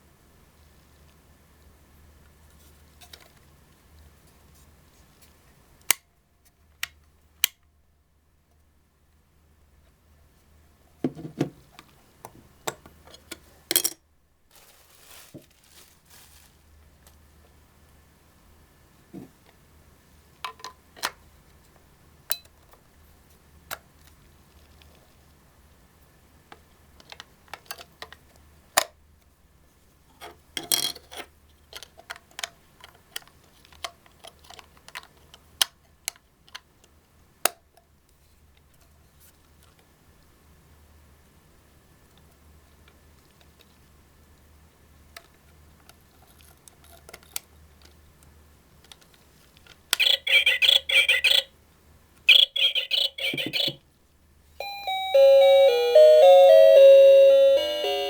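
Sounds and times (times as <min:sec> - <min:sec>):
soft rustle: 0:14.5 - 0:17.1
plastic alarm clock clicking: 0:50.0 - 0:51.4, 0:52.3 - 0:53.8.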